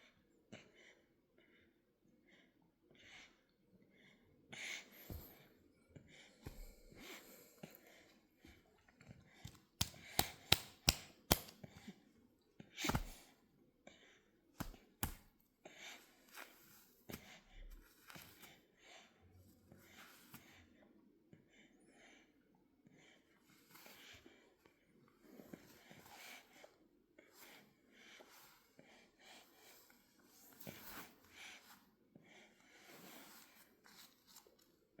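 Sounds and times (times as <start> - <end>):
sharp smacking clicks: 9.8 - 11.6.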